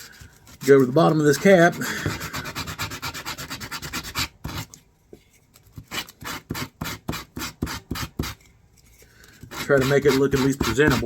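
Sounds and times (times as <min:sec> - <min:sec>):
sandpaper rubbing on wood: 0:00.6 - 0:04.7, 0:05.9 - 0:08.4, 0:09.5 - 0:11.0.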